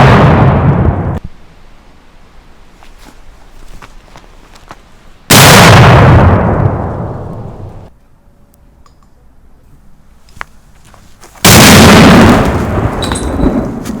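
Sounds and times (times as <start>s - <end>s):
firecracker bang: 5.3s - 7.7s, 11.4s - 14.0s.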